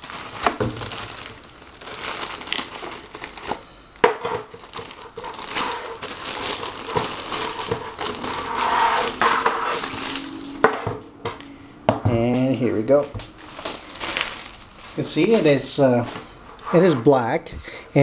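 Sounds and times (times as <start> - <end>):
plastic packaging crinkling: 0.0 - 10.4, 13.2 - 16.4.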